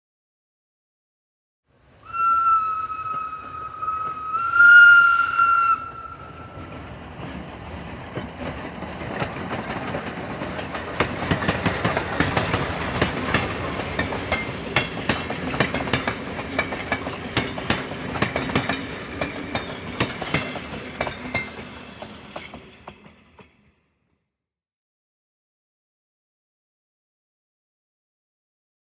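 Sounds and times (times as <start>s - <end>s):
steam locomotive whistle: 2.0s - 7.0s
train wheels clattering over rails: 5.3s - 23.7s.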